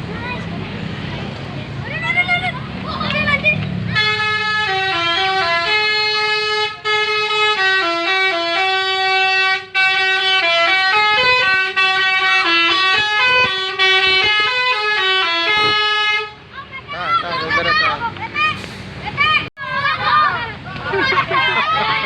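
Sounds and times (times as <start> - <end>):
bus horn playing a melody: 3.9 - 16.5.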